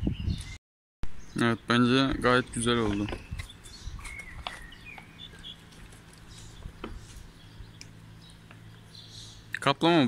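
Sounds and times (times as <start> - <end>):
steady low hum: 1.1 - 10.0
high bird chirps: 2.6 - 9.6.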